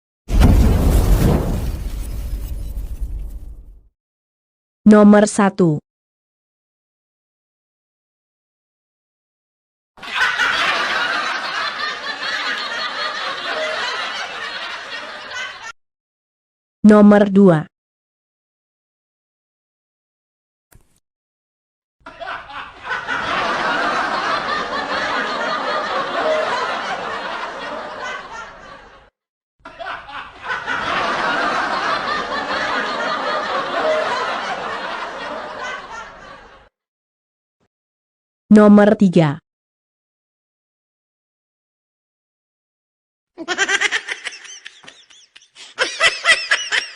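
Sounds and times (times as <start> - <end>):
hearty laughing: 10.0 - 15.7, 22.0 - 29.0, 29.6 - 36.7, 43.4 - 46.9.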